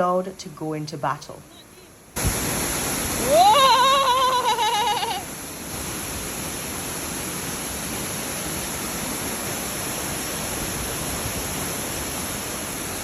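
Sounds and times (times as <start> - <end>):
waterfall rushing: 1.5 - 13.0.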